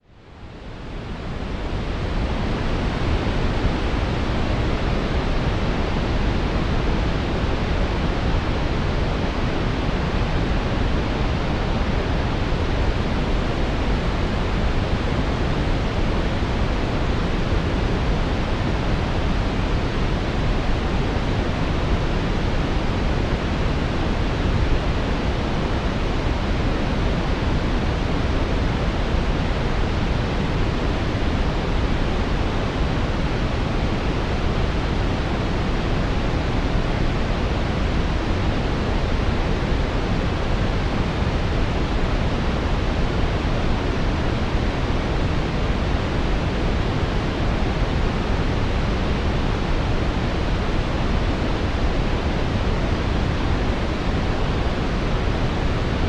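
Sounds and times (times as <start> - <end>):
brown noise: 0.3 - 56.0.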